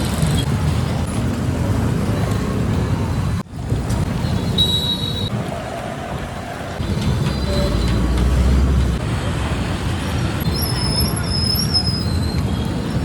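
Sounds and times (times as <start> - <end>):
traffic rumble: 0.0 - 13.0.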